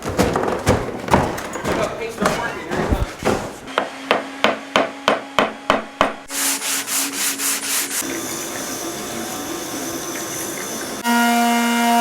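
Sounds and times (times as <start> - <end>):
rubbing strokes on wood: 0.0 - 3.7
sharp knocks on wood: 0.0 - 3.9.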